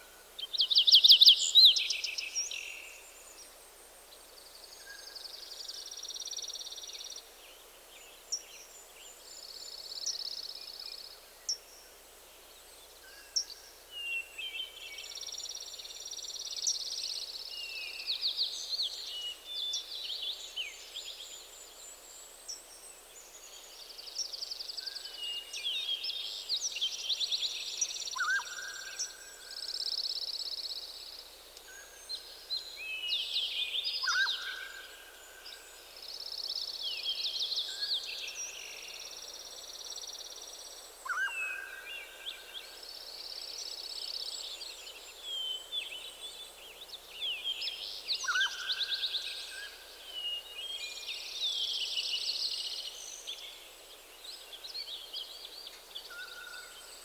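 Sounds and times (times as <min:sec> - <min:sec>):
faint steady hiss: 0:00.0 - 0:57.0
songbirds singing: 0:13.3 - 0:57.0.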